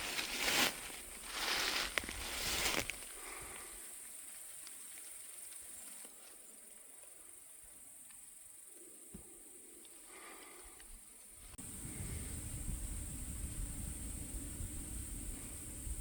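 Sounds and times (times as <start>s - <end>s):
rustling noise: 0.0s - 3.1s.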